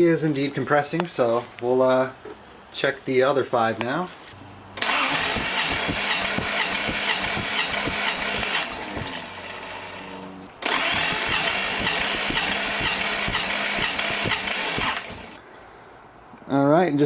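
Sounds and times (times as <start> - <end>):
engine cranking on starter: 4.8 - 15.4.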